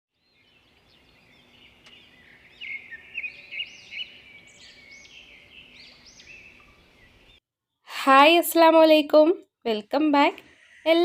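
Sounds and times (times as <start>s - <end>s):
small birds chirping: 0.1s - 8.4s, 9.7s - 11.0s.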